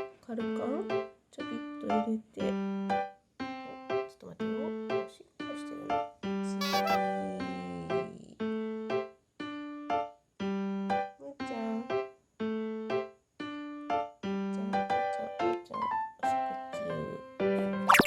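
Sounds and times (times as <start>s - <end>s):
light piano tune: 0.0s - 11.2s.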